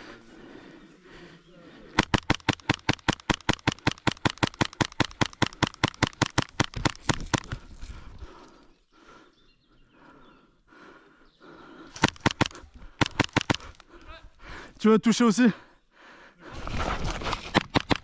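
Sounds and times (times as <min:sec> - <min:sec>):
airsoft gun automatic burst: 0:02.0 - 0:07.6, 0:12.0 - 0:13.8, 0:17.4 - 0:18.0.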